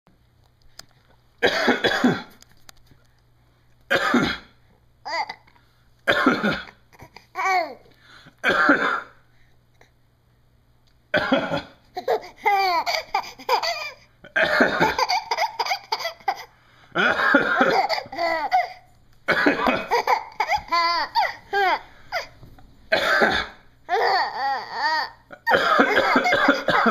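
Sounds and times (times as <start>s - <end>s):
man fake coughing: 1.4s - 2.3s, 8.4s - 9.2s, 11.2s - 11.8s, 14.3s - 16.4s, 17.0s - 21.7s, 22.9s - 23.6s, 25.3s - 26.9s.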